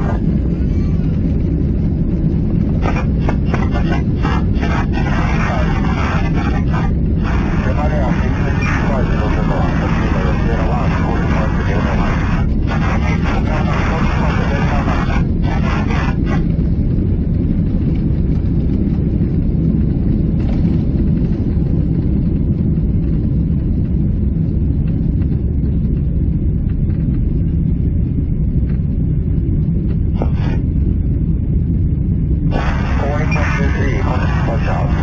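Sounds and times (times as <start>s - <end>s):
airplane cabin engine rumble: 0.0s - 35.0s.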